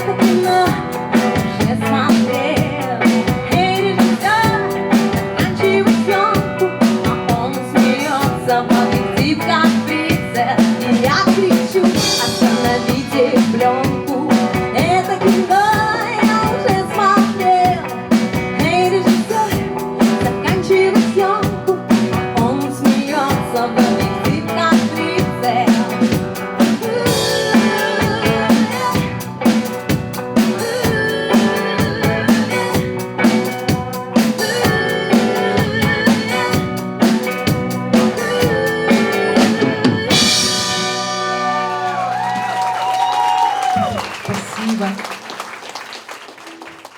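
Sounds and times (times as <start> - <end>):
drum kit beat: 0.0 - 44.9
band music: 0.0 - 46.9.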